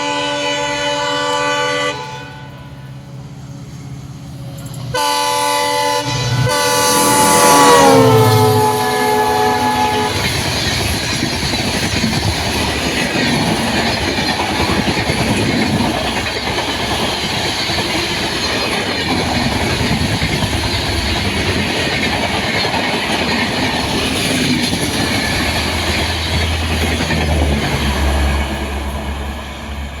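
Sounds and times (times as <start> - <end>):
locomotive horn: 0.0 - 2.8, 4.9 - 10.4
train rushing past: 0.0 - 30.0
wheels clickety-clack on rails: 3.4 - 5.7, 7.7 - 30.0.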